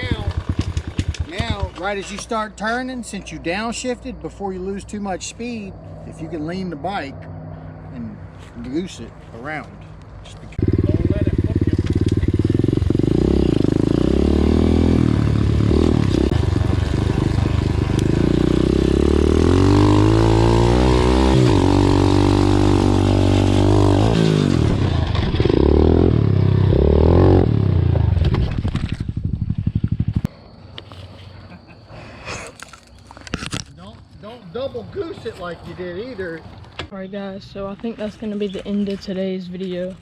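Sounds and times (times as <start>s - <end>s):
dirt bike engine revving: 0.0s - 1.9s, 10.6s - 30.3s.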